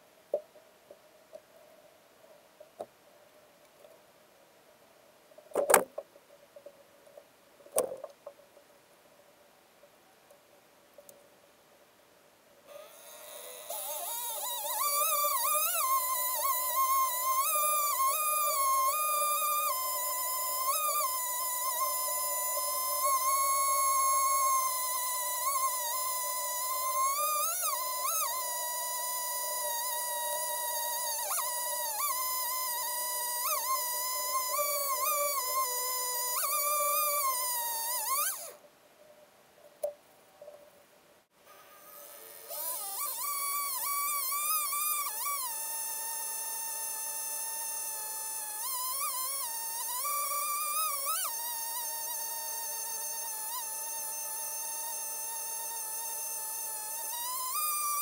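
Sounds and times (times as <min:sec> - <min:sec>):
chainsaw cutting wood at high revs: 0:12.7 - 0:38.6, 0:41.5 - 0:58.0.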